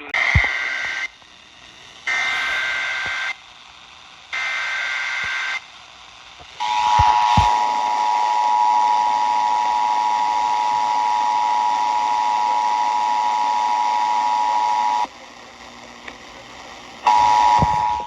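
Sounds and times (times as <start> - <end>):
two-tone broadcast alarm: 0.0 - 3.4
hiss: 0.0 - 9.4.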